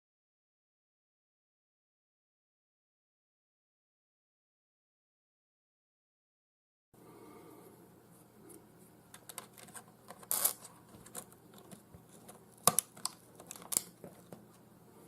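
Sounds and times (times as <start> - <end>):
sharp plastic clicks: 12.6 - 14.1.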